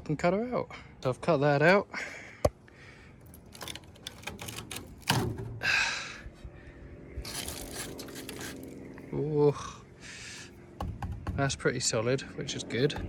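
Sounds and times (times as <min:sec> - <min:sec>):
loud metal scrape: 0:07.2 - 0:08.8.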